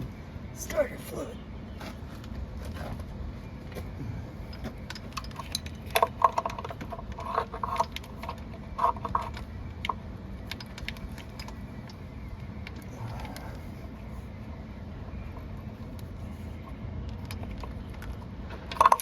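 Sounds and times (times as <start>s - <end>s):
steady low rumble: 0.0s - 7.3s
metal wrenches and parts clanking: 4.5s - 9.4s.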